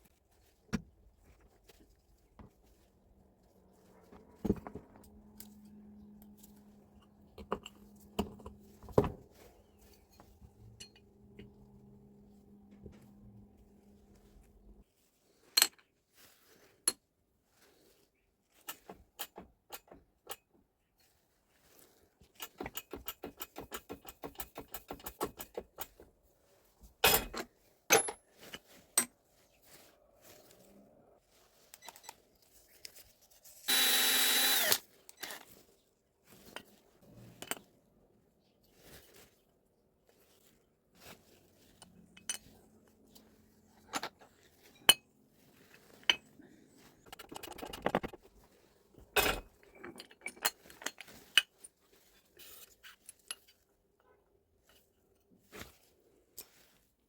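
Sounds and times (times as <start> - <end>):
metal tools clinking on workbench: 10.1 - 11.1.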